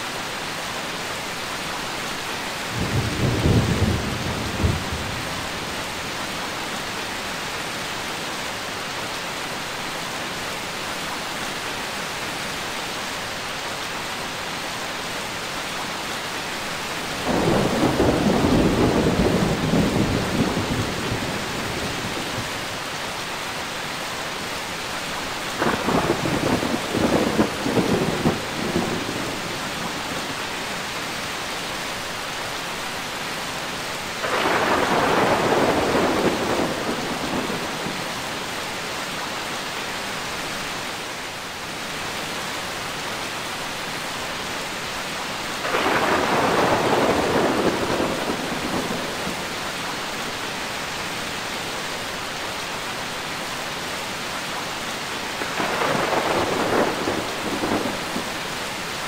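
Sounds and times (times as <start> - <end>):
heavy rain hissing: 0.0 - 59.0
thunder rumbling: 2.7 - 5.7, 17.2 - 22.6, 25.6 - 30.2, 34.2 - 38.0, 45.6 - 49.5, 55.4 - 58.4.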